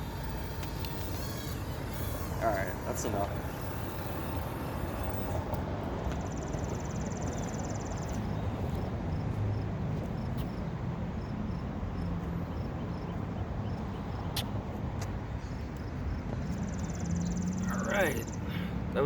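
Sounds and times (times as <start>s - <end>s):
fast high-pitched buzz: 0.0s - 7.7s.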